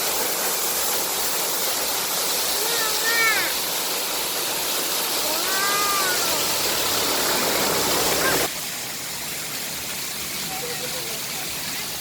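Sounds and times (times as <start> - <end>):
waterfall and river rushing: 0.0 - 10.4.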